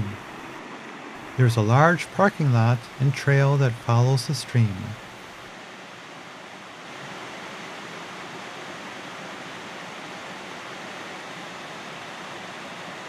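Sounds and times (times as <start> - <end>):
stream water rushing: 0.0 - 0.6, 1.2 - 5.8.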